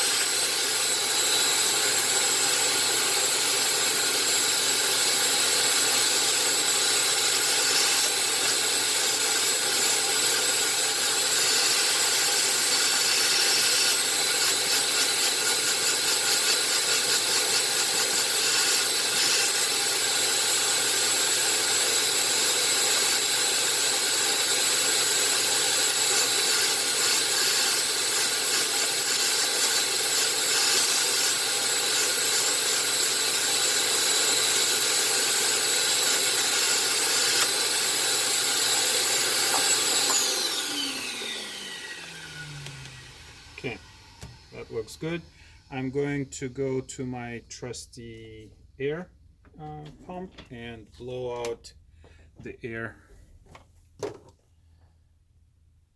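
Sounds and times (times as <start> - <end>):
vacuum cleaner whining: 0.0 - 46.8.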